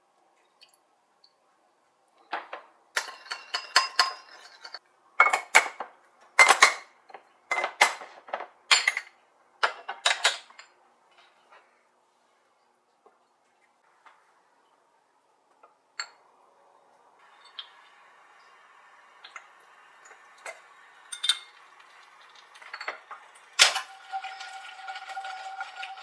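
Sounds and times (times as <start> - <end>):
dishes and utensils clinking: 2.4 - 5.8, 6.4 - 10.8, 19.3 - 26.0.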